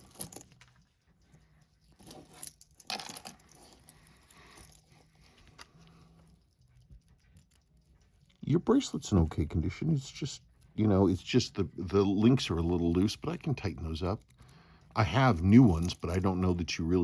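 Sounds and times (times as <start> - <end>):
handling rustling and clicks: 0.0 - 9.5.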